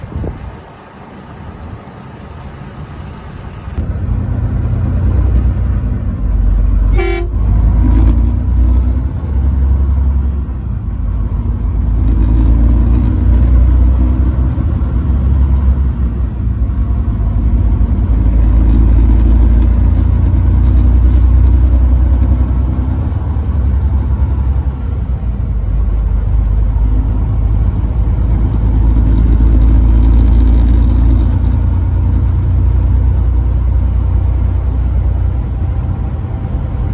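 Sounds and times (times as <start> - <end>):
truck engine and road noise: 0.0 - 36.9
truck horn toot: 6.7 - 8.2.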